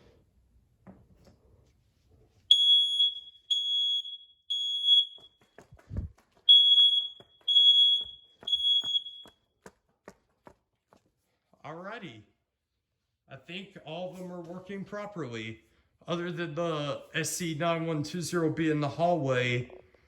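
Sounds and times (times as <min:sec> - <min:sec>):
smoke alarm beeping: 0:02.5 - 0:05.4, 0:06.5 - 0:09.4.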